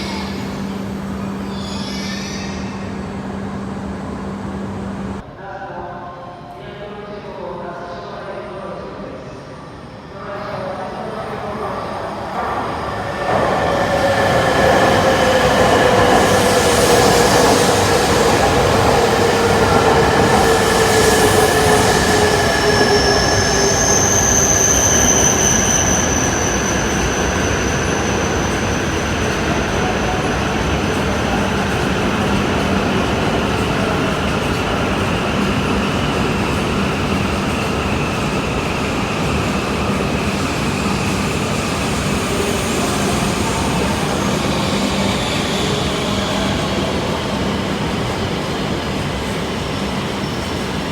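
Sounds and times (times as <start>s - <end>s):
high-pitched squeal: 0.0s - 3.0s, 11.8s - 30.8s.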